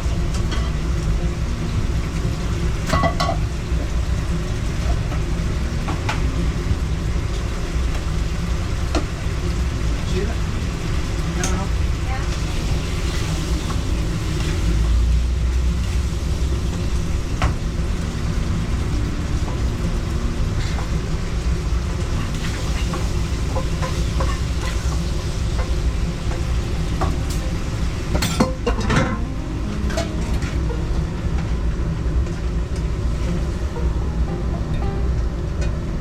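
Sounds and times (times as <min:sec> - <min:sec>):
steady low rumble: 0:00.0 - 0:36.0
utensils clattering: 0:20.6 - 0:31.5.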